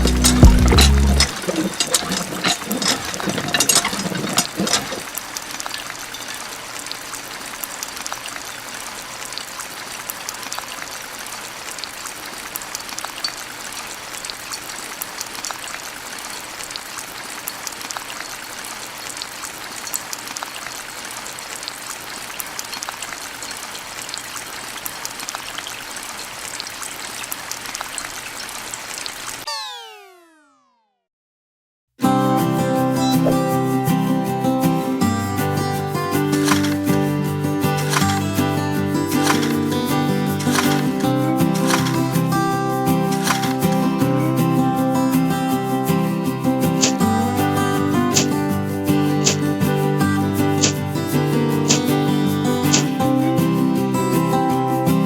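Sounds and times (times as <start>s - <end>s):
sharp clicks and splashes: 0.0s - 8.5s, 36.2s - 44.0s, 46.6s - 47.2s, 48.1s - 49.6s, 50.4s - 50.9s, 51.6s - 53.0s
water running and trickling: 0.0s - 29.5s, 35.0s - 53.2s.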